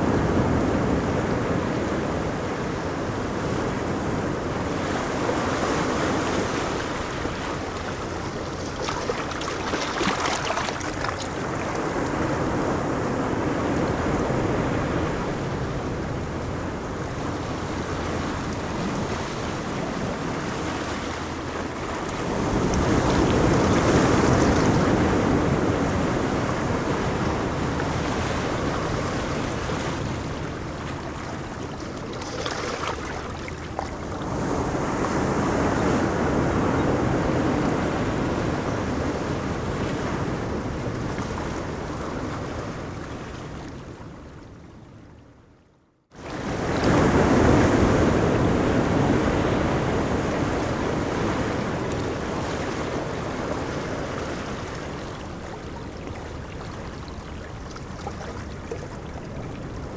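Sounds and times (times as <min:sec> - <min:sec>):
ocean surf on beach: 0:00.0 - 0:45.0, 0:46.2 - 0:59.9
wave breaking: 0:02.6 - 0:36.4.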